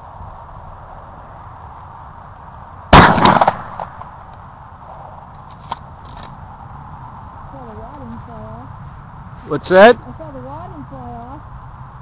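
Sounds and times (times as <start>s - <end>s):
shotgun shot echoing: 2.9s - 4.0s.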